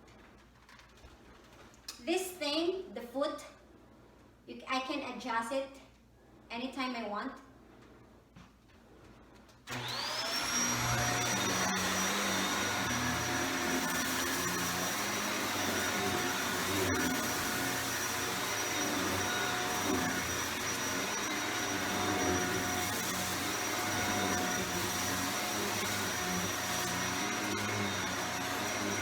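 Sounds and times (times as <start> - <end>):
vacuum cleaner motor whining: 9.7 - 29.0.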